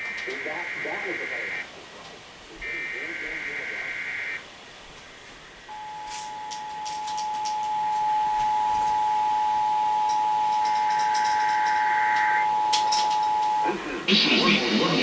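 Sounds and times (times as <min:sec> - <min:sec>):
warbling data-burst tones: 0:00.0 - 0:01.7, 0:02.6 - 0:04.4, 0:05.6 - 0:15.0
two-tone alert signal: 0:05.7 - 0:13.9.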